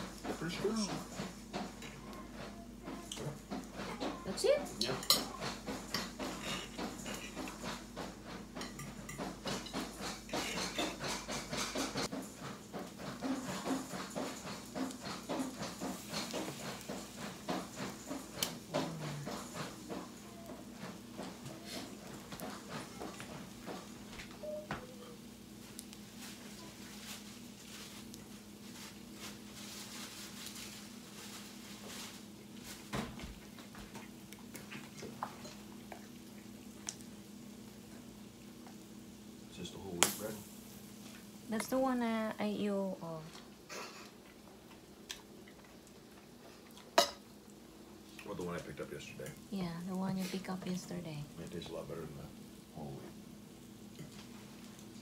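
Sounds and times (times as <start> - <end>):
food sizzling on a griddle: 4.4 - 7.9, 8.6 - 24.4, 36.5 - 43.0
fat crackling and popping: 25.5 - 53.0.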